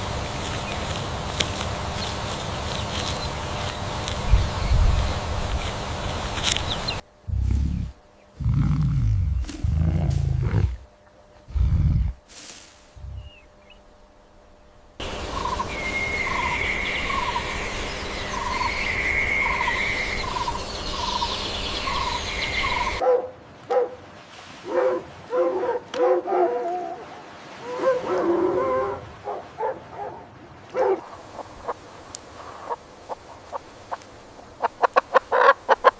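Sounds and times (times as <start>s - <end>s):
dogs yipping and barking: 27.7s - 31.0s.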